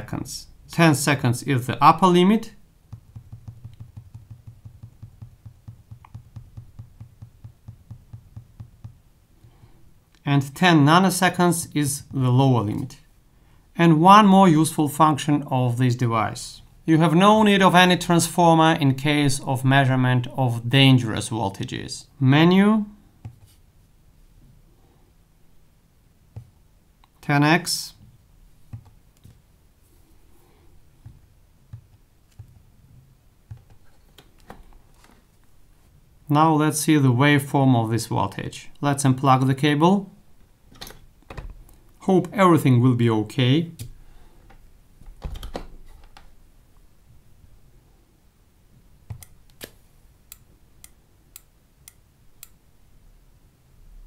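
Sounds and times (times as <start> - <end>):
knock on device: 2.9 - 9.0
faint clicks and taps: 2.9 - 10.2, 26.3 - 27.2, 28.0 - 29.4.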